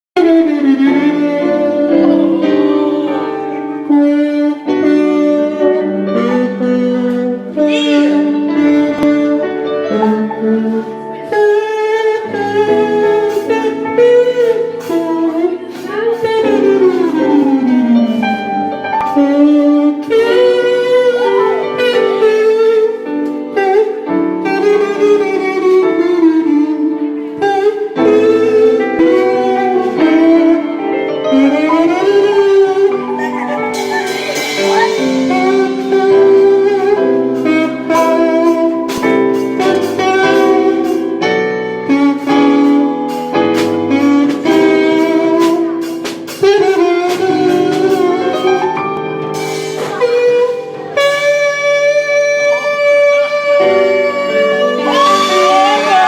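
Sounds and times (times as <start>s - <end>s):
held accompanying chords: 0.2s - 56.0s
man imitating trumpet with mouth: 0.2s - 56.0s.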